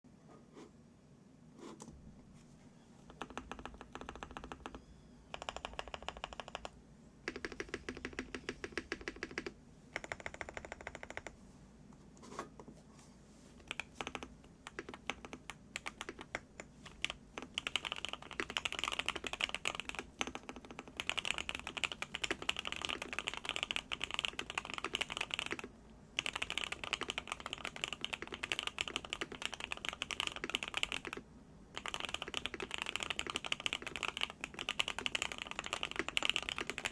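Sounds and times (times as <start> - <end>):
mechanical keyboard typing: 3.1 - 11.4, 13.6 - 31.2, 31.8 - 36.9.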